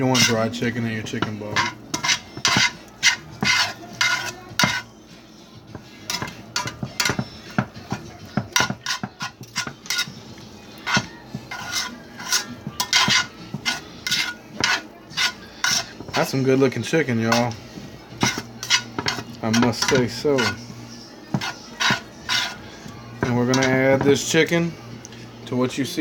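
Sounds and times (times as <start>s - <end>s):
metal utensil scraping a pot: 0.0s - 5.0s, 5.7s - 24.5s.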